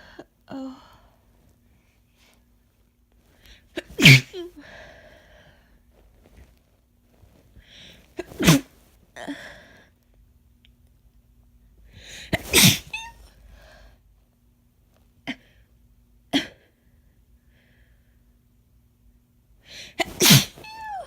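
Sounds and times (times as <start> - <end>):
woman sneezing: 3.8 - 4.6, 8.2 - 8.7, 12.3 - 13.2, 20.0 - 21.0
breathy noisy breaths: 4.6 - 5.9, 9.2 - 10.0.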